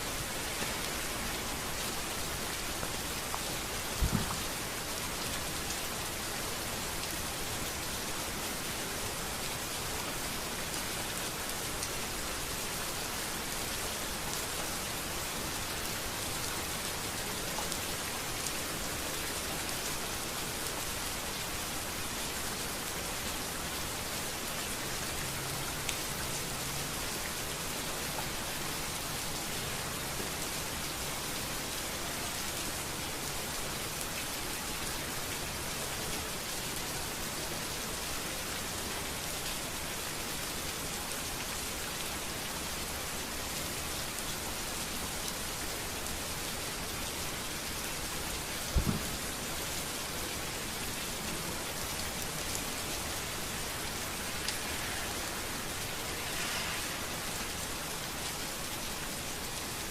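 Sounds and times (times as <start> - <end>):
rain falling on street: 0.0 - 59.9.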